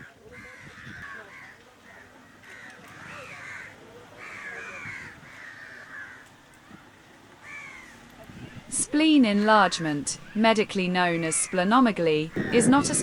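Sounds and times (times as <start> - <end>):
crows cawing: 0.0 - 6.8, 7.4 - 8.1, 11.0 - 13.0.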